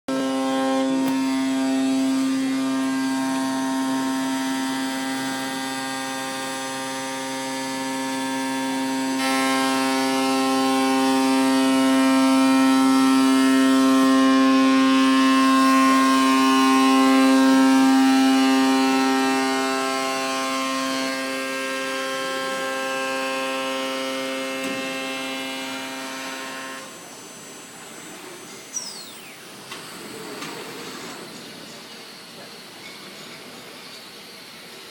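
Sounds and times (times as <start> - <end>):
cnc router spindle whine: 0.1 - 34.9.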